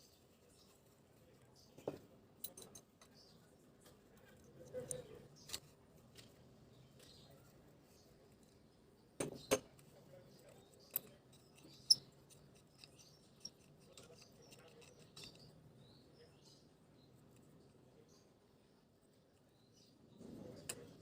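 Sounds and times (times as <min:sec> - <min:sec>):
metal clicks and knocks: 0:01.8 - 0:03.2.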